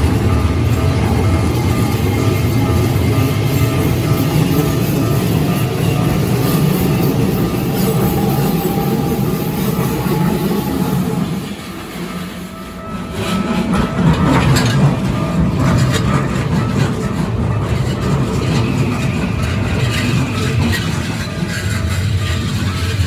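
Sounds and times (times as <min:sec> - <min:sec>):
electric train passing: 0:00.0 - 0:23.0
wheels clicking over rail joints: 0:13.0 - 0:23.0.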